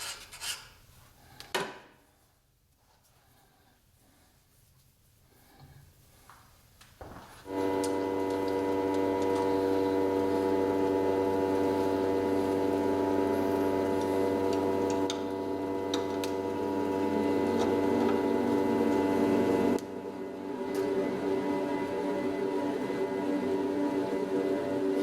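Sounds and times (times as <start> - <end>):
metal lathe droning hum: 7.5 - 25.0.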